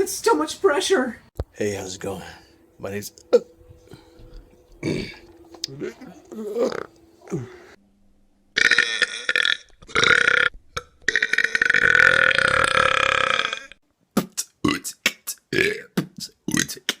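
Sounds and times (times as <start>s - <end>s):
person belching loudly: 4.7s - 7.8s, 8.6s - 10.5s, 11.1s - 13.8s.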